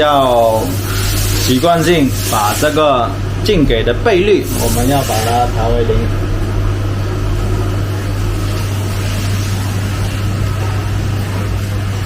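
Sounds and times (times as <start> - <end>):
milling machine humming: 0.0 - 12.0.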